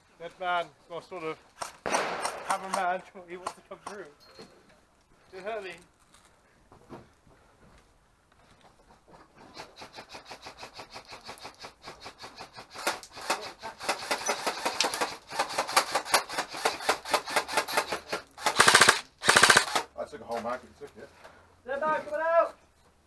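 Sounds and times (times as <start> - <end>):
airsoft rifles firing full-auto: 1.8 - 3.0, 12.8 - 19.9.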